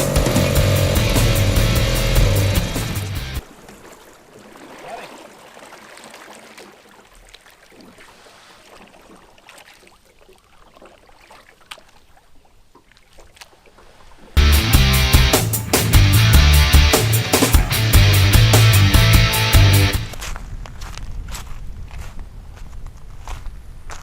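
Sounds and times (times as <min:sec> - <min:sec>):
rock music: 0:00.0 - 0:03.4, 0:14.4 - 0:20.1
faint river water: 0:00.0 - 0:14.4.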